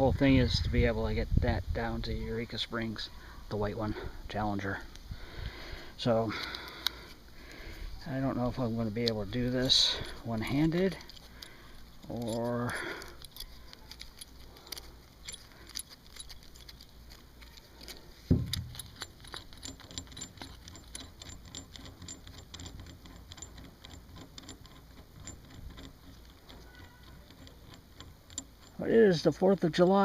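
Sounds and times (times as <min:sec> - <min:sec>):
metal clinks and rattles: 0:04.7 - 0:30.0
heavy thump: 0:18.3 - 0:18.9.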